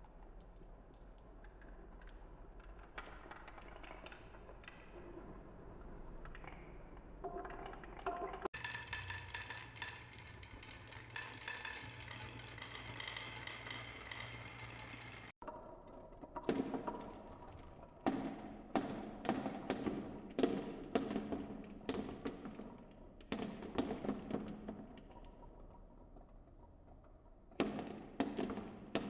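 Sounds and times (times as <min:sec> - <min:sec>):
marbles clacking on wood: 0:06.0 - 0:29.0.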